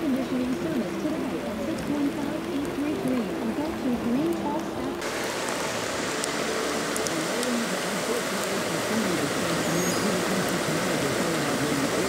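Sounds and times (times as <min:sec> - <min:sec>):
floodwater rushing: 0:00.0 - 0:12.0
faint indistinct voices: 0:06.5 - 0:12.0.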